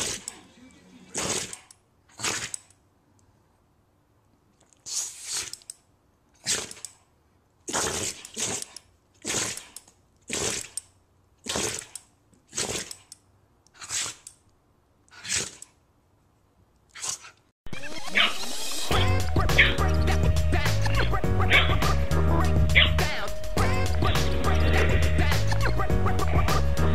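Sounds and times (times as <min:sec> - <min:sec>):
dog sneezing: 0:01.1 - 0:02.6, 0:04.8 - 0:05.6, 0:06.4 - 0:06.8, 0:13.8 - 0:14.2.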